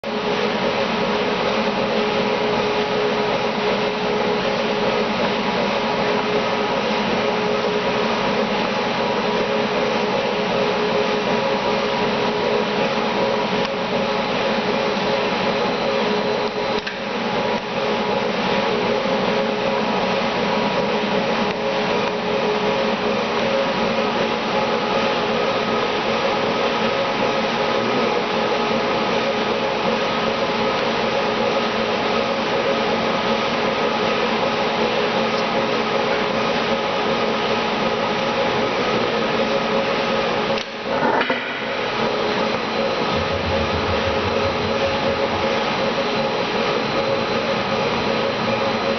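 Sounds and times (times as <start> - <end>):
machine motor whirring: 40.8 - 48.8
steady tones: 40.9 - 47.9
broad rushing noise: 40.9 - 48.9.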